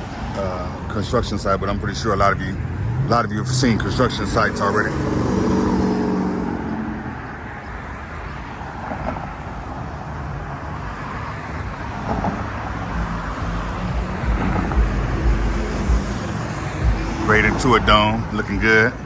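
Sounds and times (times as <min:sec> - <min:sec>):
passing vehicle engine hum: 0:00.0 - 0:19.0
steady traffic hum: 0:00.0 - 0:19.0
low rumble: 0:11.7 - 0:19.0.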